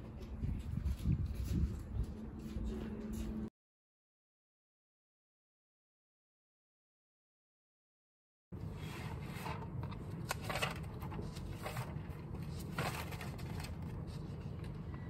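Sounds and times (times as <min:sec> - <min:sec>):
low background hum: 0:00.0 - 0:03.5, 0:08.6 - 0:15.0.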